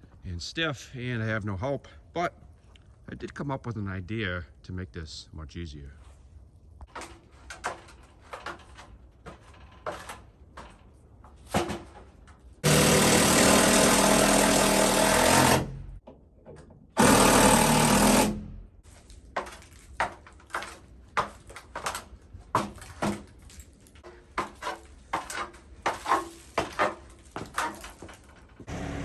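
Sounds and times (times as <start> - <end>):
power tool running: 12.6 - 16.0, 17.0 - 18.6, 28.7 - 29.0.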